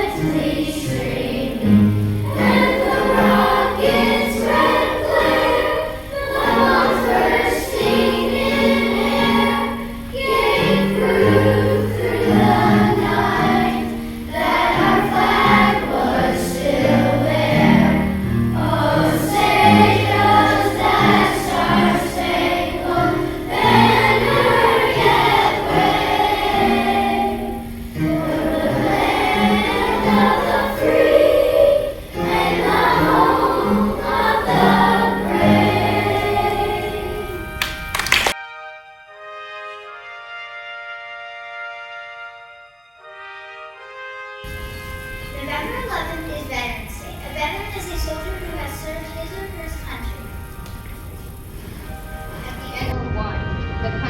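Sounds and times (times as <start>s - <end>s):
choir singing: 0.0s - 38.0s
instrumental accompaniment: 0.0s - 46.3s
held low bass notes: 11.0s - 37.6s.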